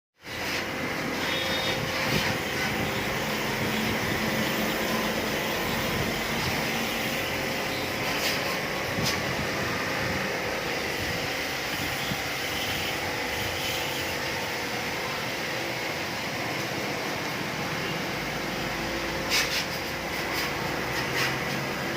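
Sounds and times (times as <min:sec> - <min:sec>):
air conditioner whirring: 0:00.2 - 0:21.9.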